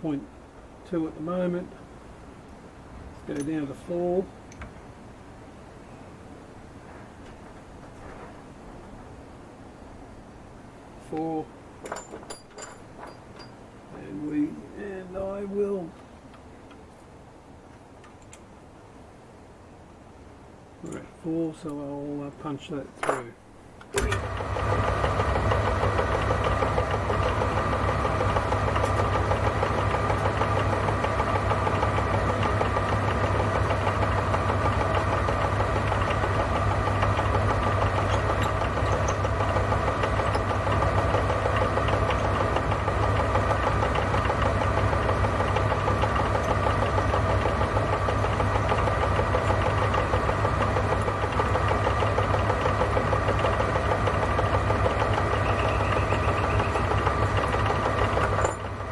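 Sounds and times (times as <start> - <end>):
milling machine motor hum: 23.9 - 58.9.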